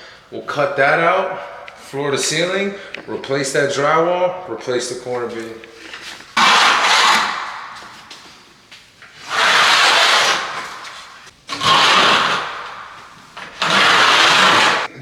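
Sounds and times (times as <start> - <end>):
rough scraping: 4.8 - 14.9.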